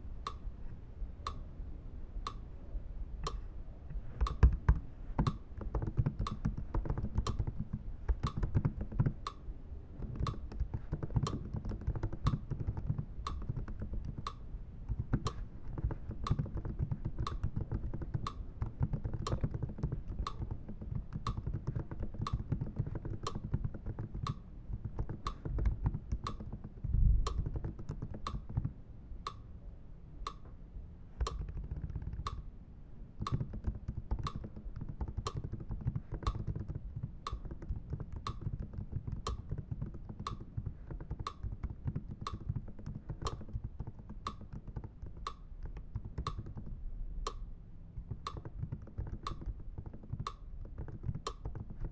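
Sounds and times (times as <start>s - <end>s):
typing on computer keyboard: 4.2s - 9.4s, 10.0s - 28.7s, 31.2s - 32.4s, 33.2s - 47.4s, 48.0s - 51.9s
sharp repeating click: 10.0s - 26.6s, 31.2s - 32.4s, 33.2s - 46.7s, 48.1s - 51.9s.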